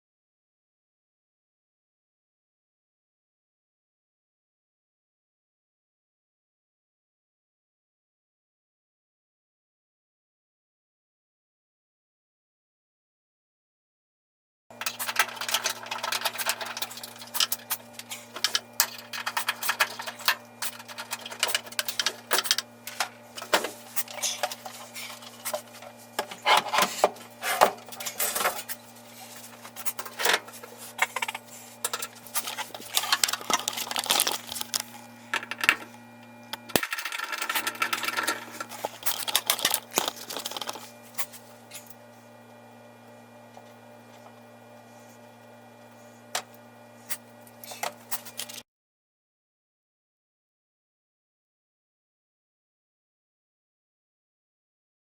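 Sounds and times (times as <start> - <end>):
low electrical hum: 14.7 - 48.6.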